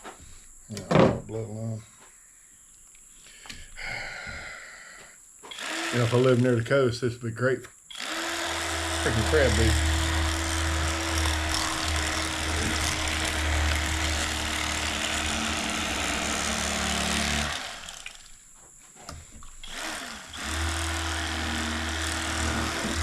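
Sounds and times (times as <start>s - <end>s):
electric fillet knife buzzing: 5.5s - 6.4s, 7.9s - 18.4s, 19.6s - 23.0s.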